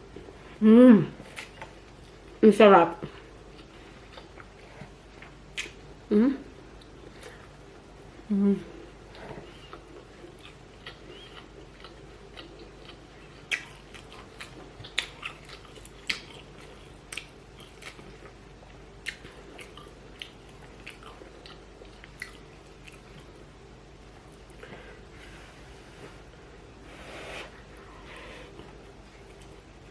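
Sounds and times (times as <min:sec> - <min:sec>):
mouth chewing food: 0:03.0 - 0:24.7.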